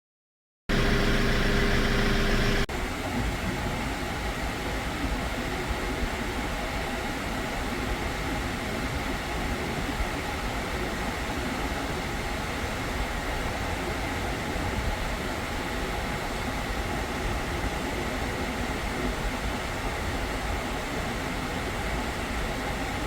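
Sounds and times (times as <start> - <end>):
truck engine humming: 0.7 - 2.7
air conditioning air rush: 0.7 - 23.0.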